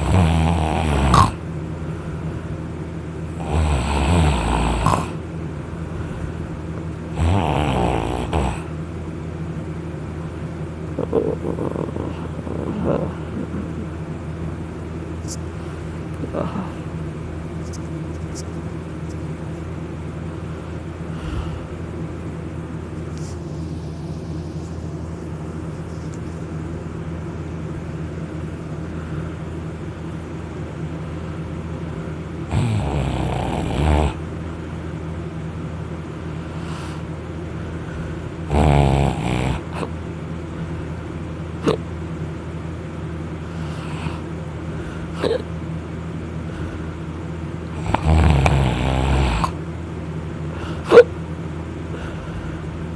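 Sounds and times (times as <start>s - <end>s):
person snoring loudly: 0.0s - 1.4s, 3.3s - 5.2s, 7.1s - 8.7s, 32.5s - 34.2s, 38.4s - 39.9s, 47.7s - 49.6s
steady low hum: 0.0s - 52.9s.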